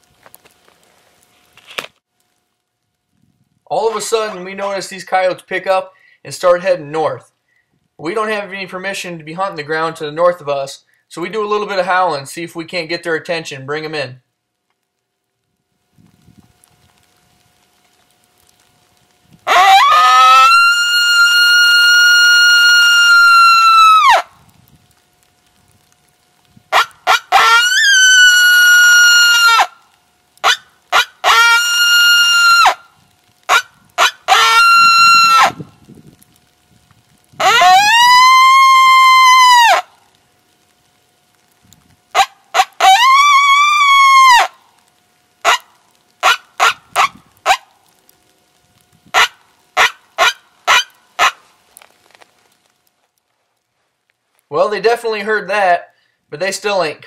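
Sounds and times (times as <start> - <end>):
howler call howls and yips: 19.5 - 24.3, 26.7 - 29.8, 30.4 - 32.8, 33.5 - 35.6, 37.4 - 39.9, 42.2 - 44.6, 45.4 - 47.6, 49.2 - 51.4.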